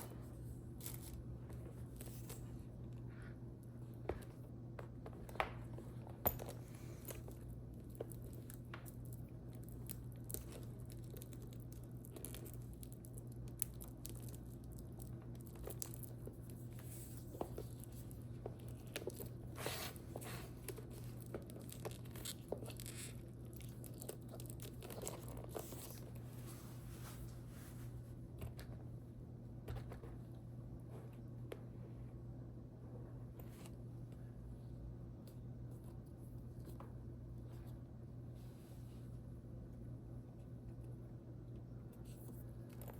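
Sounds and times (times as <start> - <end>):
low steady hum: 0.0 - 42.9
wrapping crinkling: 7.8 - 27.8.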